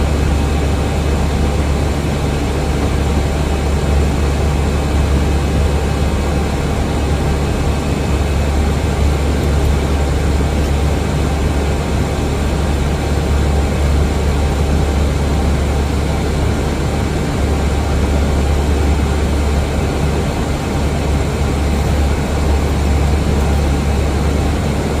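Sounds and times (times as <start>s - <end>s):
airliner cabin engine rumble: 0.0s - 25.0s.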